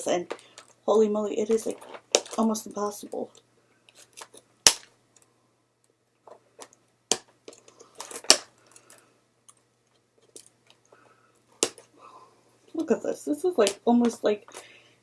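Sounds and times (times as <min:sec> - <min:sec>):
plastic snapping and crackling: 0:06.6 - 0:08.9.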